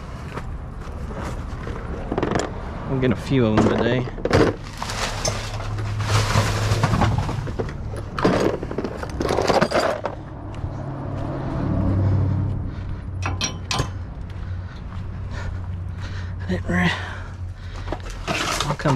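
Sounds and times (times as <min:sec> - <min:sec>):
metal clattering and scraping: 0:01.0 - 0:10.4, 0:13.2 - 0:14.2, 0:17.7 - 0:18.9.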